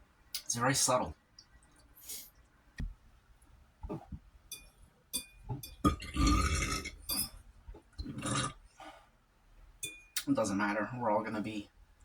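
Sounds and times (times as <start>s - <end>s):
long loud burp: 5.9s - 7.0s, 8.1s - 8.6s.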